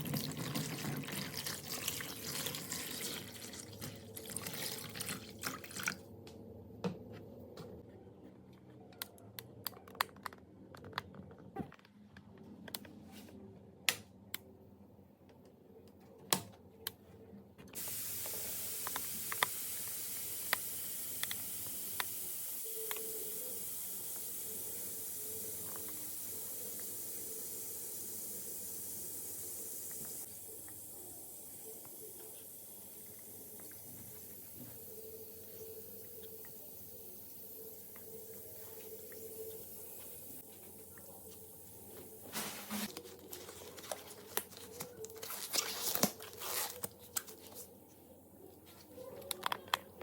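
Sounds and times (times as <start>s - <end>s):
steady hiss: 17.8s - 44.6s.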